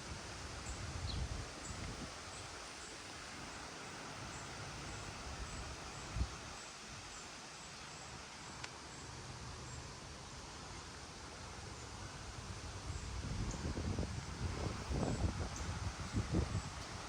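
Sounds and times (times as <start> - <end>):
gusty wind through trees: 0.0 - 17.0
leaves rustling: 0.0 - 17.0
wind buffeting microphone: 0.1 - 2.6, 12.5 - 17.0.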